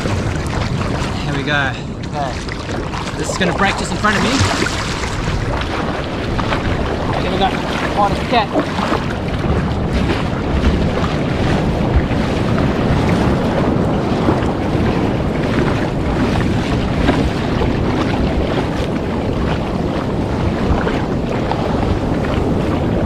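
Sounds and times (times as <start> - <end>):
small splashes: 0.0 - 12.4
breaking surf and rushing whitewater: 0.0 - 23.0
wind buffeting microphone: 0.0 - 23.0.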